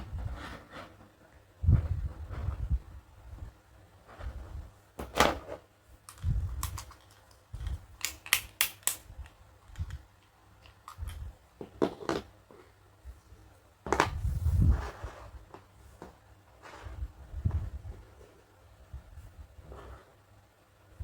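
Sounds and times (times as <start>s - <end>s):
plastic toy pieces clicking: 6.1s - 10.0s.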